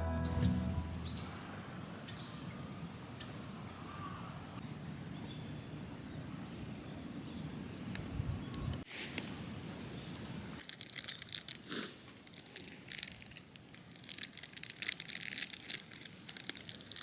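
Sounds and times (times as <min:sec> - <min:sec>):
low rumble: 0:00.0 - 0:01.3
faint bird calls: 0:01.1 - 0:04.6.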